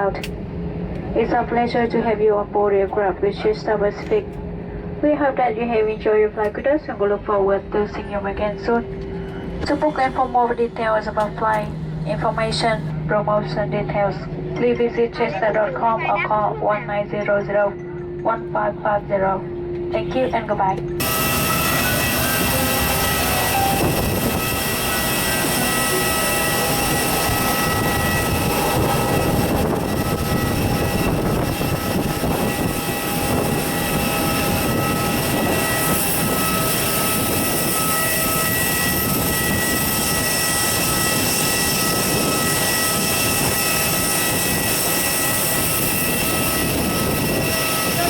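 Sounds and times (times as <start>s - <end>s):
jet engines whining at idle: 0.0s - 48.0s
cabin rumble: 0.8s - 33.4s.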